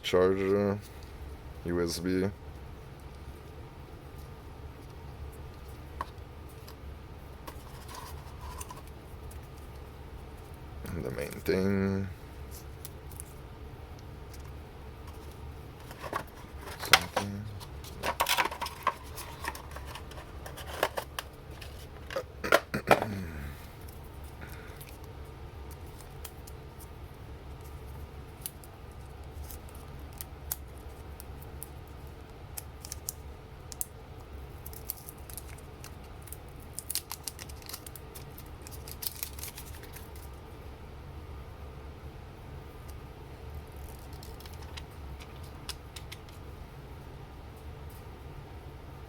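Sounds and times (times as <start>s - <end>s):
steady low hum: 0.0s - 49.0s
packaging being opened: 15.1s - 23.0s, 34.6s - 40.4s.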